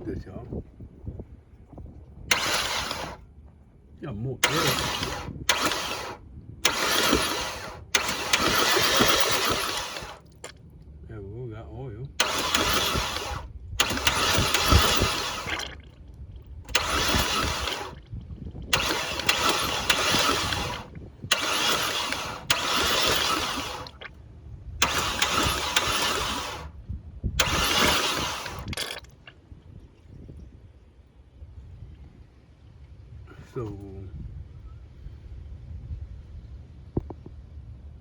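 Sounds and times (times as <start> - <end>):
car engine cranking on starter: 2.3 - 3.2, 4.0 - 10.6, 12.1 - 16.0, 16.7 - 24.2, 24.8 - 26.8, 27.4 - 29.3.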